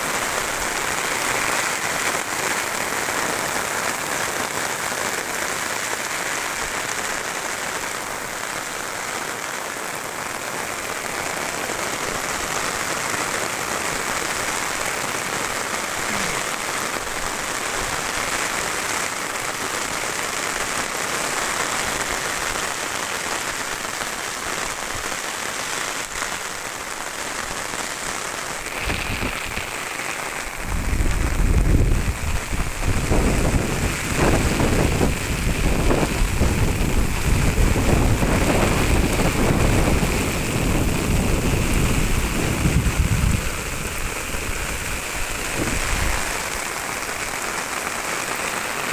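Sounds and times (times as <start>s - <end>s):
heavy rain hissing: 0.0s - 48.9s
wind buffeting microphone: 30.6s - 46.6s.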